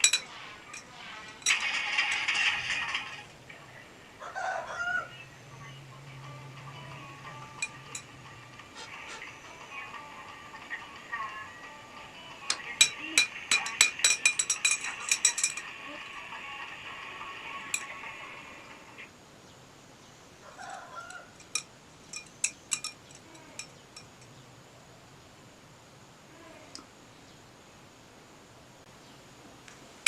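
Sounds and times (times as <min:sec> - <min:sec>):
hard objects clicking and clinking: 0:00.0 - 0:02.7, 0:07.4 - 0:08.2, 0:12.5 - 0:15.8, 0:21.1 - 0:24.3
faint steady tones: 0:05.0 - 0:29.4.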